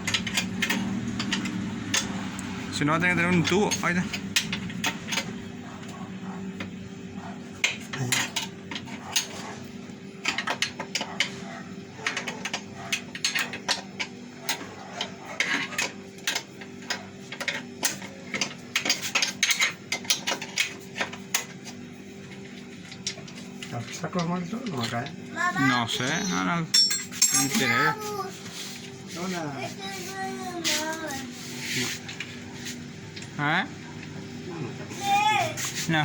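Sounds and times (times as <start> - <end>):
metal parts clinking: 26.7 - 27.7.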